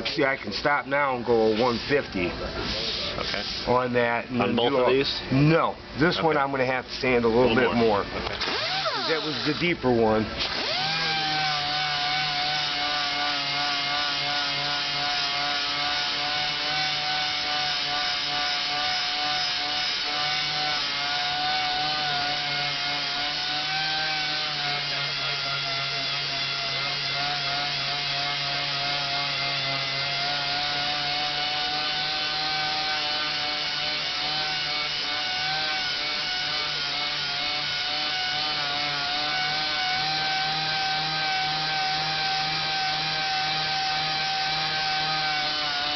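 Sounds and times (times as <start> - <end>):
orbital sander running: 7.3 - 45.9.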